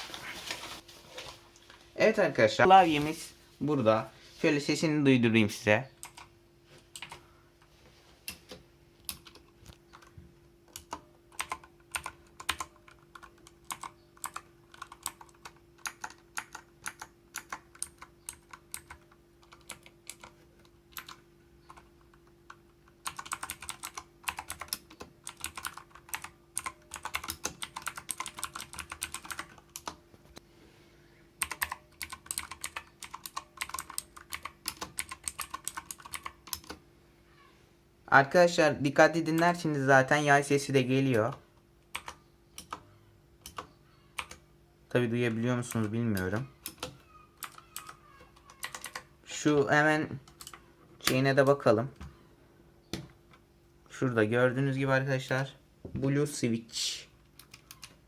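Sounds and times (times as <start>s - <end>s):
mechanical keyboard typing: 6.0s - 6.3s, 7.0s - 7.2s, 8.3s - 10.1s, 10.7s - 30.0s, 31.4s - 36.8s, 41.2s - 44.4s, 45.6s - 49.1s, 50.2s - 51.2s, 57.4s - 58.0s.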